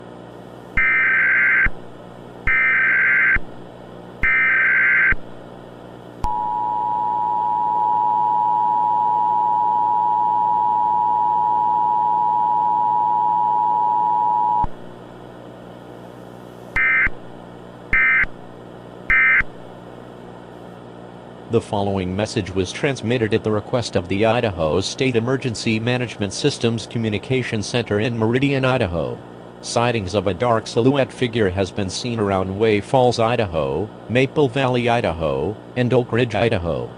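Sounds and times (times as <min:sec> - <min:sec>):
buzzy digital data bursts: 0:00.8 - 0:01.8, 0:02.5 - 0:03.4, 0:04.2 - 0:05.2.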